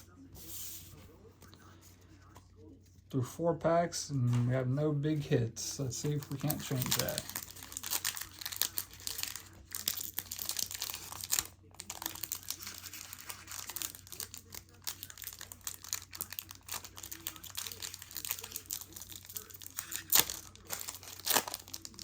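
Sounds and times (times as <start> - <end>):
foil wrapper crinkling: 6.0 - 22.0.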